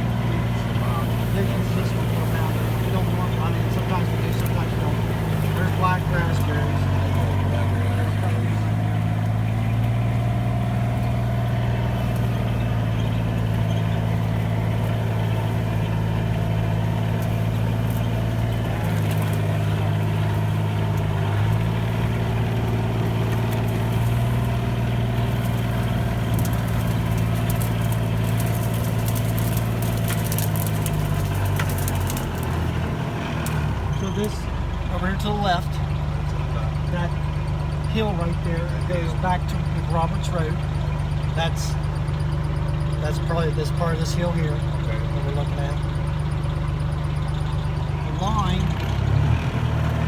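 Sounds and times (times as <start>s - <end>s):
vehicle engine running: 0.0s - 50.0s.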